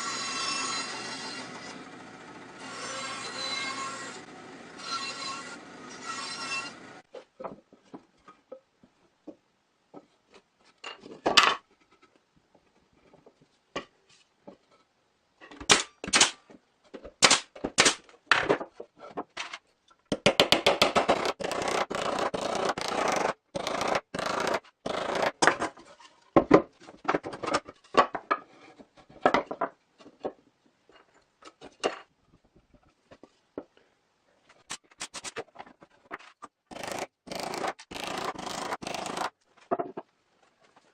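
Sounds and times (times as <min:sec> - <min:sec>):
wood knocking and scraping: 0:07.1 - 0:14.8, 0:25.4 - 0:33.8, 0:37.4 - 0:40.9.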